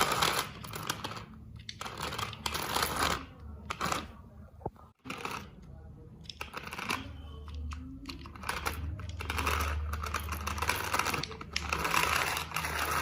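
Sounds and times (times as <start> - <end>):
plastic wheels clattering: 6.3 - 13.0
toy car motor humming: 7.7 - 13.0.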